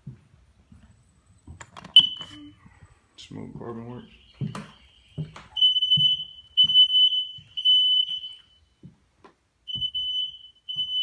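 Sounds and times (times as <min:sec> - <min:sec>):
smoke alarm beeping: 0:01.8 - 0:02.6, 0:04.0 - 0:08.8, 0:09.6 - 0:11.0.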